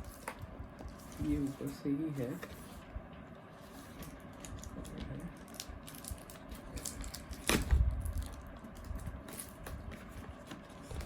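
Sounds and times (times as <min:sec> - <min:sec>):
packaging clicks and crinkles: 0:04.0 - 0:11.0.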